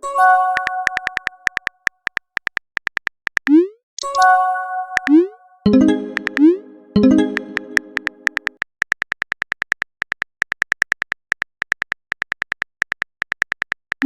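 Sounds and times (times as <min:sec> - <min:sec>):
electronic keyboard-tap blips: 0:00.4 - 0:14.0
clicks: 0:00.5 - 0:04.3, 0:04.9 - 0:14.0
electronic chord-like tone: 0:05.7 - 0:08.4.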